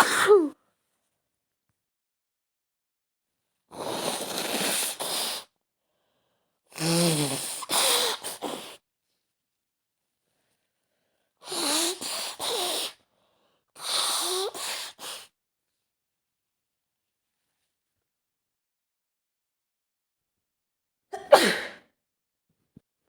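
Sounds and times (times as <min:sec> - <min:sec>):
woman blowing her nose: 0:00.0 - 0:00.6, 0:03.7 - 0:05.5, 0:06.7 - 0:08.8, 0:11.4 - 0:13.0, 0:13.8 - 0:15.3, 0:21.2 - 0:21.8
woman sneezing: 0:00.0 - 0:00.6, 0:21.2 - 0:21.9.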